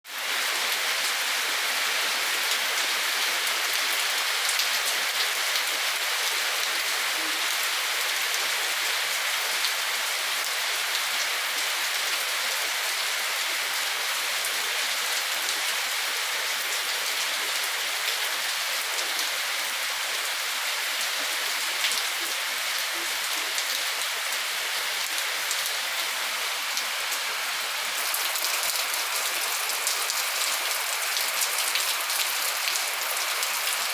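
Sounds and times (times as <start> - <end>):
steady rain falling: 0.1 - 33.9.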